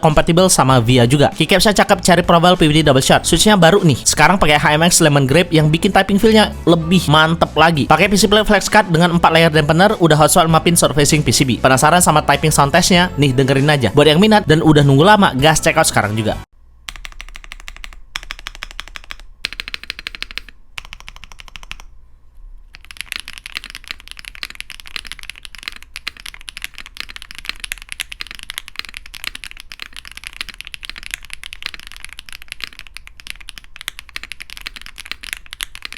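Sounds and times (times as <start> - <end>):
mechanical keyboard typing: 16.9 - 21.9, 22.7 - 35.9.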